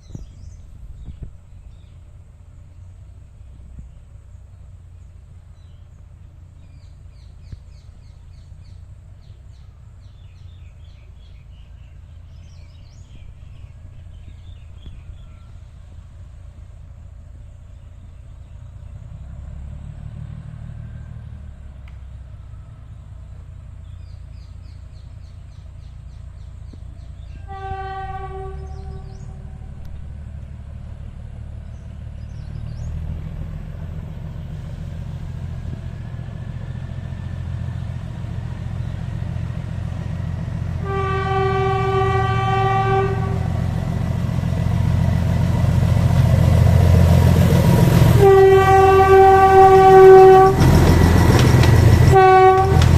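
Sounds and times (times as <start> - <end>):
train engine rumble: 0.0 - 52.9
train horn blasts: 27.2 - 29.9, 40.7 - 44.0, 47.8 - 52.9.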